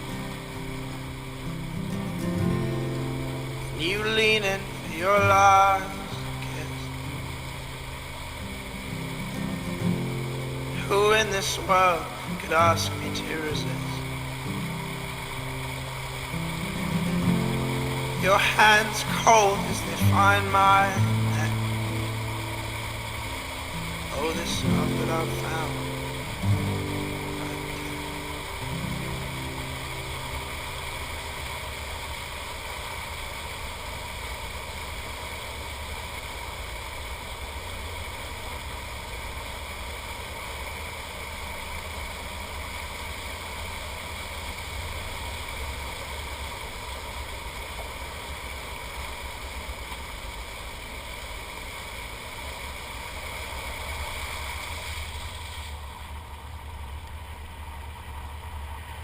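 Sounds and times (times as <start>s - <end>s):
song playing: 0.0s - 7.8s, 8.5s - 31.7s
vehicle running: 0.0s - 59.0s.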